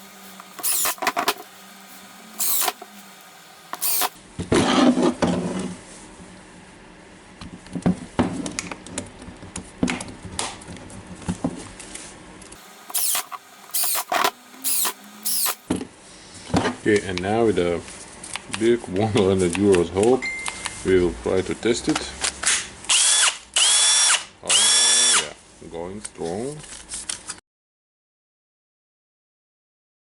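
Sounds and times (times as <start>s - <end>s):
hands handling plastic parts: 0.0s - 4.2s, 12.6s - 15.6s.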